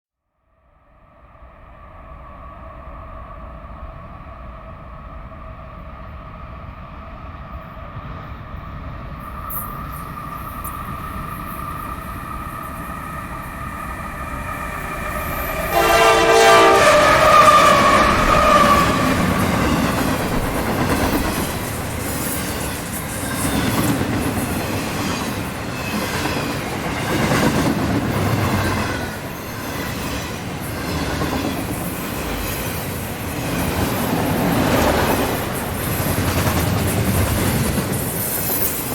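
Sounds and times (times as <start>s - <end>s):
train rumbling past: 1.0s - 38.9s
train air horn: 15.5s - 20.7s
wheels clacking over rail joints: 15.7s - 38.9s.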